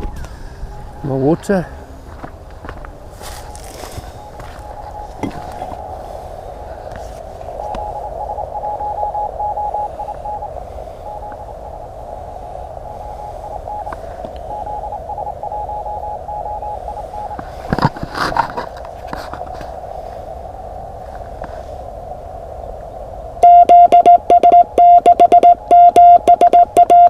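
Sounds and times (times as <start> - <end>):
morse code tone: 0.0 - 1.4, 3.2 - 5.8, 7.6 - 11.8, 12.8 - 17.5, 23.4 - 27.0
radio receiver hiss: 3.2 - 21.9.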